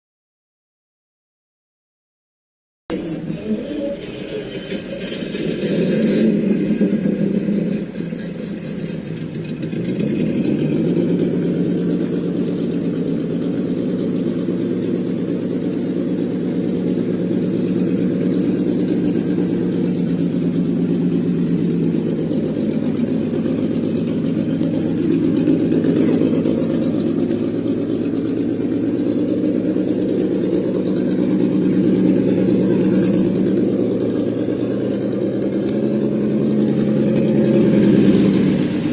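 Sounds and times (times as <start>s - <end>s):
simulated engine from small speaker: 2.9s - 38.9s.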